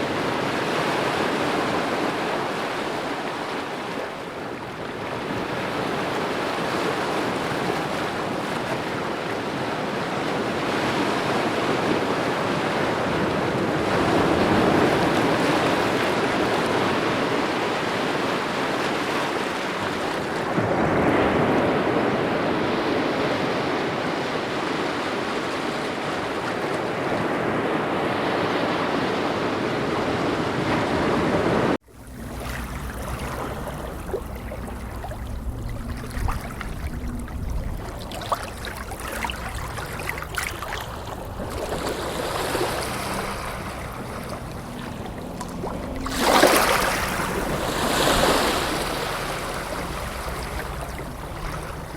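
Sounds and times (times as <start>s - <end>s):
waves washing ashore: 0.0s - 51.9s
wind rumbling on microphone: 0.0s - 51.9s
light water with small ticks: 31.8s - 51.9s.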